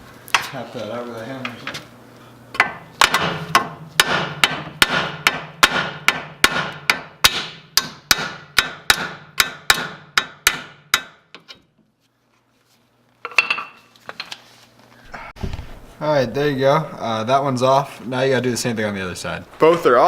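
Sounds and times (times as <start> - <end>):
hammer striking metal: 2.6 - 11.5.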